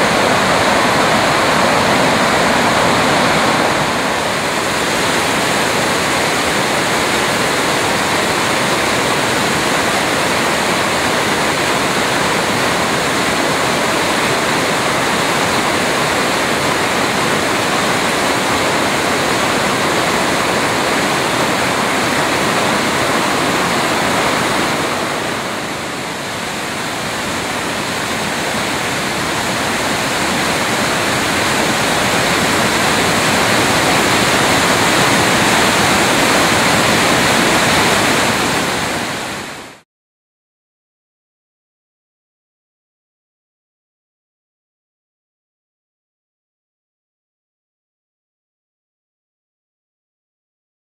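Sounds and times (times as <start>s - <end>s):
waterfall rushing: 0.0s - 39.8s.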